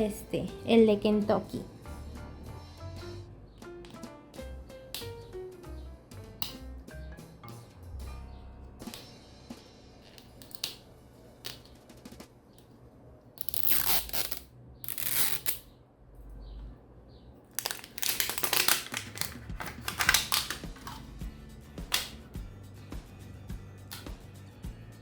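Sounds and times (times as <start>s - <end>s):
plastic packaging crinkling and tearing: 17.6s - 21.0s.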